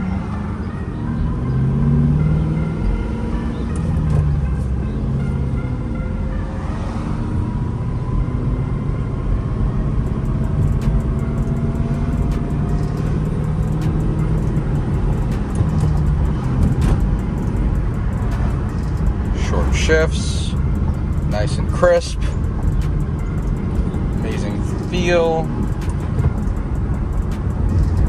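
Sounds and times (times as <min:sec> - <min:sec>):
car engine accelerating: 0:00.0 - 0:28.0
sharp clicks: 0:22.4 - 0:28.0.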